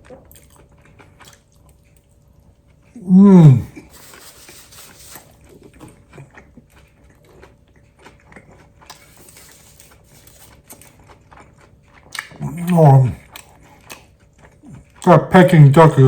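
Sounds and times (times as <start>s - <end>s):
close-up chewing: 0.0s - 16.0s
man grunting: 3.0s - 3.8s, 12.4s - 13.2s, 15.1s - 16.0s.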